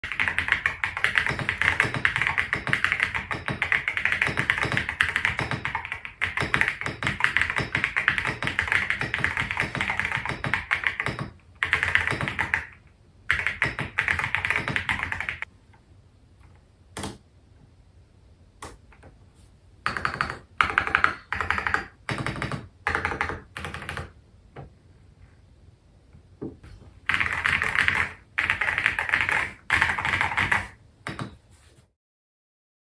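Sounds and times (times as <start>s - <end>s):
mechanical keyboard typing: 0.0s - 15.5s, 19.9s - 24.2s, 27.1s - 31.3s.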